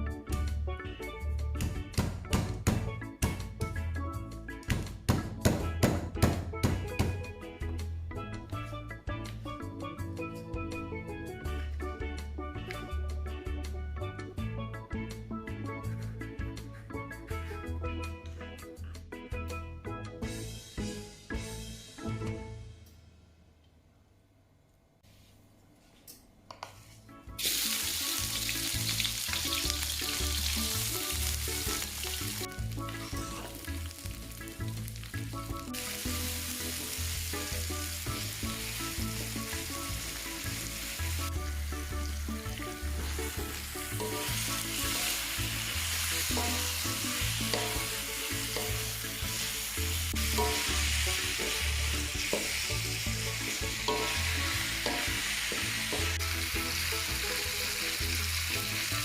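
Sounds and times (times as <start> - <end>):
background music with bass line: 0.0 - 22.8, 27.2 - 59.0
food sizzling in a frying pan: 27.4 - 59.0.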